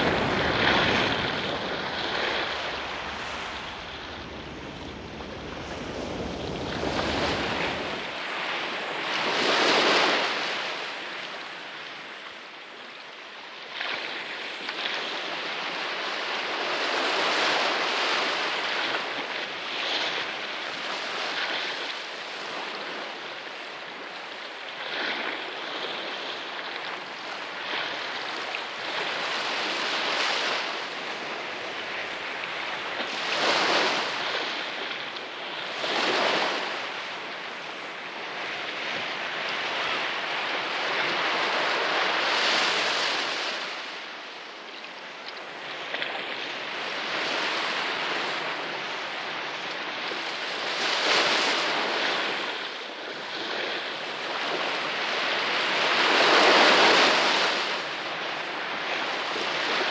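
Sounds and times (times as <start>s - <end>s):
steady water hiss: 0.0s - 8.4s
ocean waves surging and washing out: 0.0s - 10.8s, 27.2s - 44.1s.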